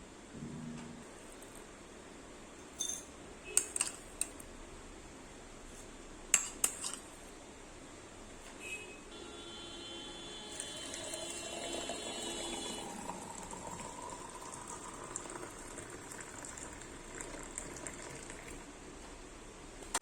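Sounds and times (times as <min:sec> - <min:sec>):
liquid pouring into a cup: 0:10.5 - 0:18.8.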